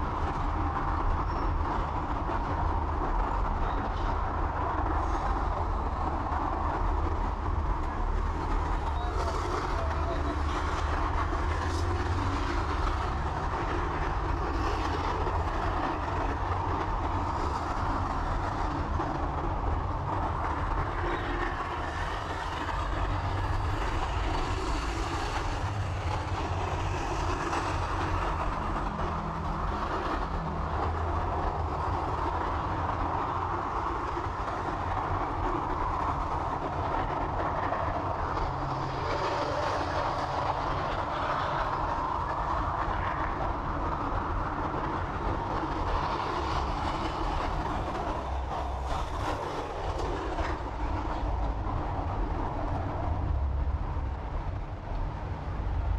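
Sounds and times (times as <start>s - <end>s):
train rumbling: 0.0s - 55.9s
wheels clattering on rails: 0.0s - 55.9s.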